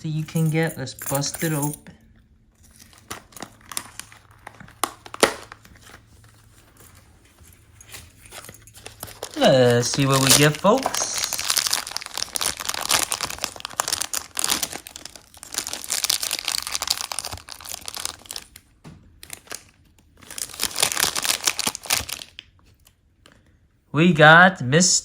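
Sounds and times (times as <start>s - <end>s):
packaging tearing and crinkling: 2.6s - 7.0s, 8.3s - 22.9s.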